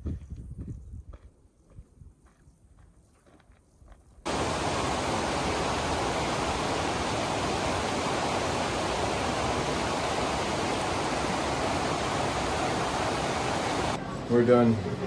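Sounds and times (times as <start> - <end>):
loud steady rushing noise: 4.3 - 14.0.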